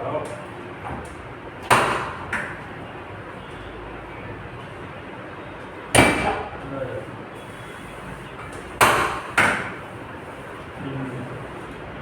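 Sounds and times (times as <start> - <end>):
sharp knocks: 1.6 - 2.6, 8.8 - 9.8.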